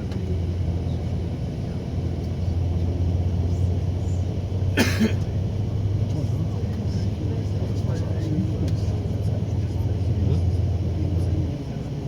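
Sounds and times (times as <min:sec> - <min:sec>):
low vehicle rumble: 0:00.0 - 0:12.0
brief cough: 0:04.8 - 0:05.3.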